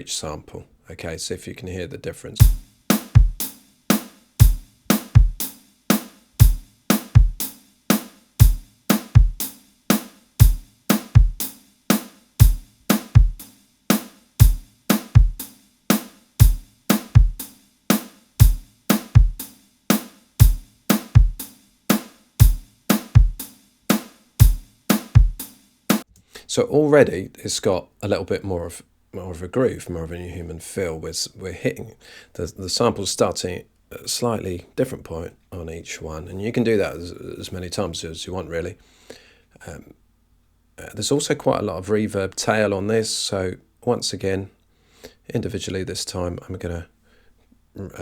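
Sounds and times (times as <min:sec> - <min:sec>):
acoustic drum kit beat: 0:02.4 - 0:26.1.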